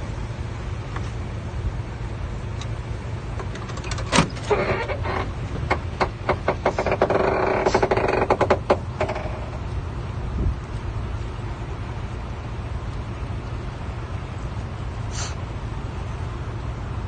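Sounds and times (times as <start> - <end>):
grinding whine: 0.0 - 16.1
bulldozer engine rumbling: 0.0 - 17.0
metallic clanks and rattle: 3.4 - 7.0.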